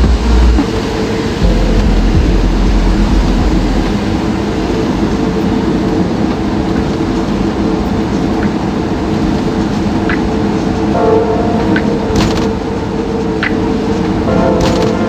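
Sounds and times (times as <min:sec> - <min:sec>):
vehicle engine and road noise: 0:01.4 - 0:04.2.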